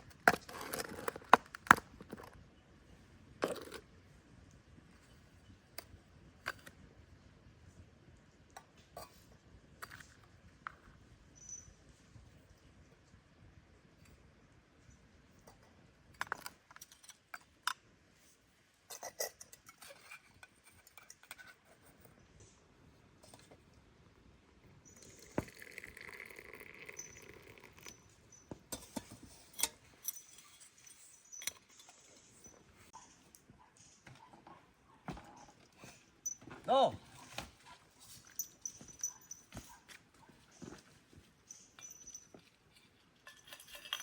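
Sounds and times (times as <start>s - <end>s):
light clicks and clinks: 24.9s - 34.0s, 37.2s - 44.0s.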